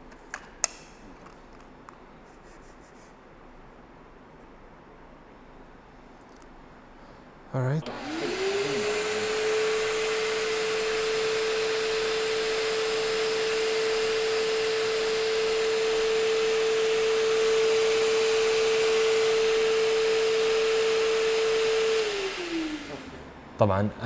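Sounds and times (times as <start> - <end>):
suction motor whining: 7.8 - 23.4.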